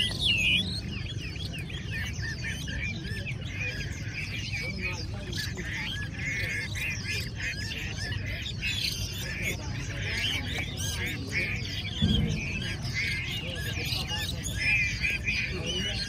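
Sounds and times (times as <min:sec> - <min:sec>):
many birds singing: 0:00.0 - 0:16.0
brief thump: 0:12.0 - 0:13.1.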